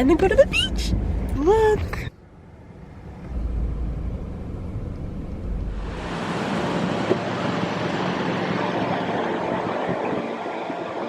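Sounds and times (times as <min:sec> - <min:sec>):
wind rumble on microphone: 0:03.5 - 0:11.0
wind rushing hiss: 0:05.7 - 0:11.0.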